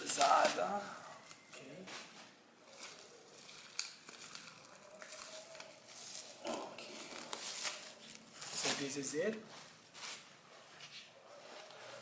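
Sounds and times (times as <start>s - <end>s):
packaging rustling and crinkling: 0.0s - 10.2s
sharp clicks and crackles: 2.8s - 5.8s.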